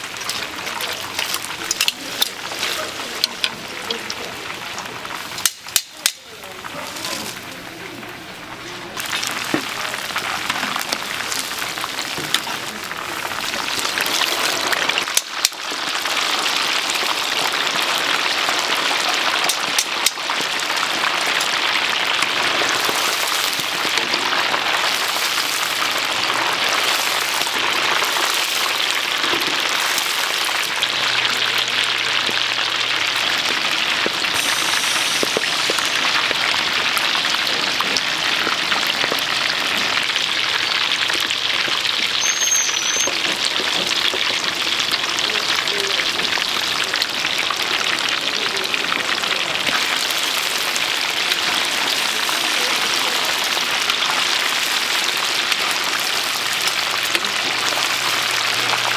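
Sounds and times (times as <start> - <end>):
sharp crackles: 0.0 - 7.6, 9.0 - 58.9
oil sizzling: 0.0 - 58.9.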